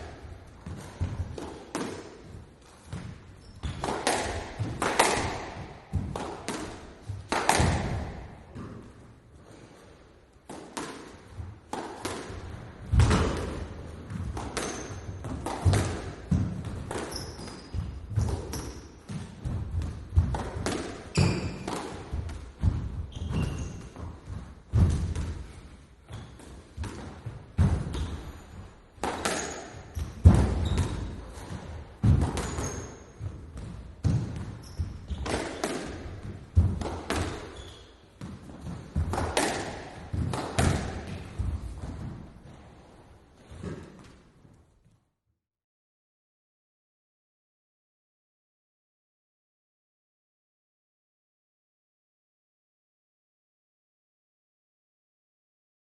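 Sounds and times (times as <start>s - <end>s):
squash ball hits: 0.0s - 9.0s, 10.4s - 42.3s
shoe squeaks: 3.3s - 3.9s, 14.6s - 15.2s, 17.0s - 19.0s, 21.1s - 21.7s, 23.1s - 24.0s, 26.1s - 26.4s, 27.9s - 28.8s, 29.4s - 31.3s, 32.4s - 33.2s, 34.6s - 35.4s, 37.4s - 38.1s.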